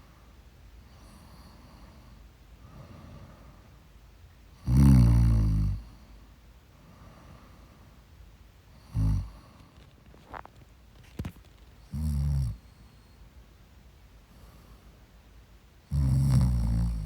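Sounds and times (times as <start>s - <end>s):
woman snoring: 8.8s - 9.6s, 15.9s - 17.0s.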